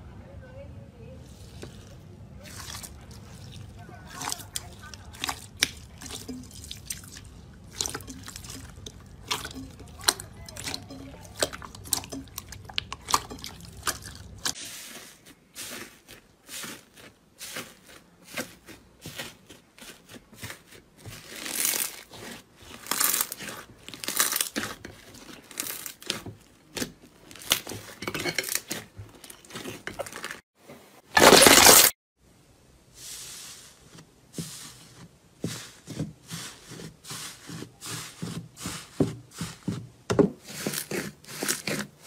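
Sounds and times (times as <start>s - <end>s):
slime crackling and squishing: 1.3s - 30.5s, 40.4s - 42.0s.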